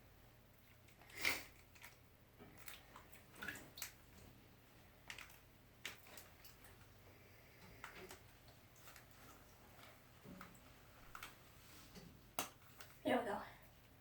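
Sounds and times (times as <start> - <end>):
wet hands squishing plastic packaging: 0.6 - 4.2, 4.8 - 7.0, 7.7 - 11.6.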